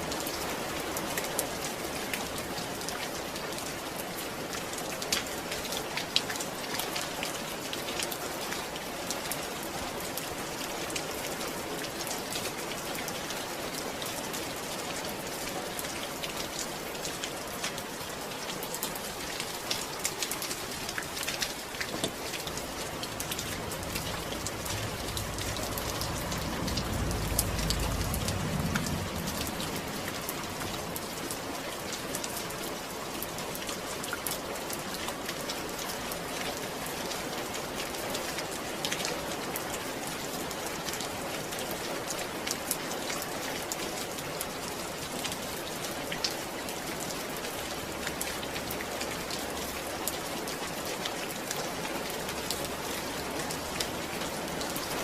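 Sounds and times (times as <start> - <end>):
steady rain falling: 0.0 - 55.0
brief low rumble: 22.5 - 31.0.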